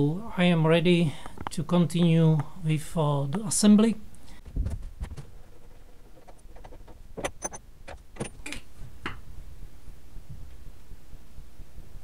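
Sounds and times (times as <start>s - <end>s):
low hum: 5.3s - 12.0s.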